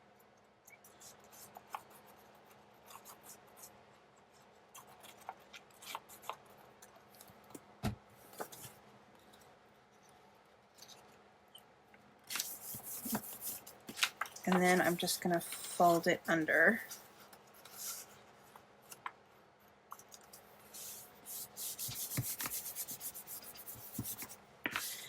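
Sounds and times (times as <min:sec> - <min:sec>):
paper rustling and clicking: 0:12.3 - 0:15.7.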